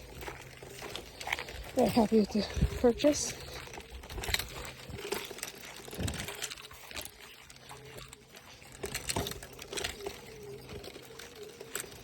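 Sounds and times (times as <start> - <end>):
fishing reel cranking: 0.0 - 12.0.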